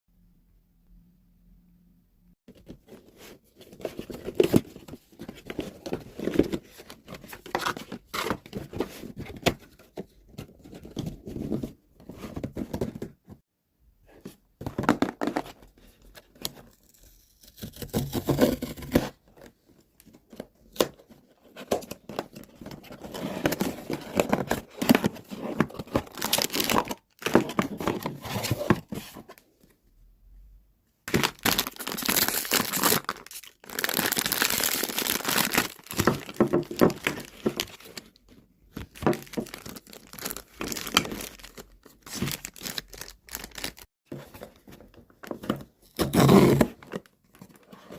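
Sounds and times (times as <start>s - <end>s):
packaging being torn open: 31.1s - 36.4s
plastic wrapping crinkling: 31.1s - 38.2s, 38.8s - 43.9s.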